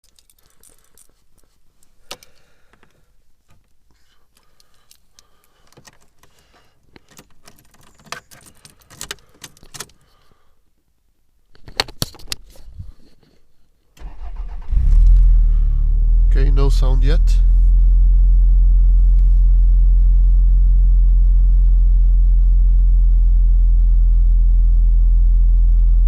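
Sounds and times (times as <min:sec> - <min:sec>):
small clicks and rattles: 0:00.0 - 0:10.0
keys jangling: 0:07.1 - 0:10.0.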